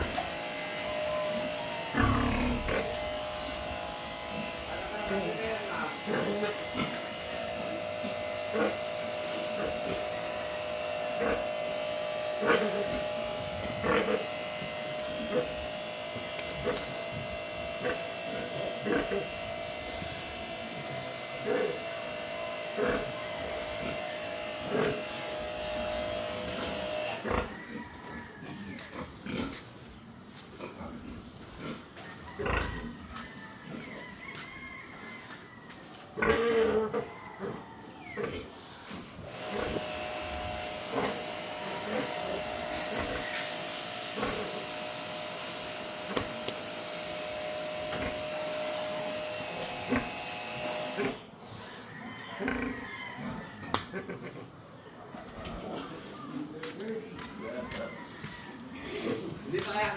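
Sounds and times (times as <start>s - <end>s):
electric hum: 0.0s - 27.2s, 39.2s - 51.2s
machine hissing: 0.0s - 27.4s, 38.6s - 51.4s
pigs grunting: 0.0s - 34.4s, 36.1s - 45.3s, 45.9s - 59.9s.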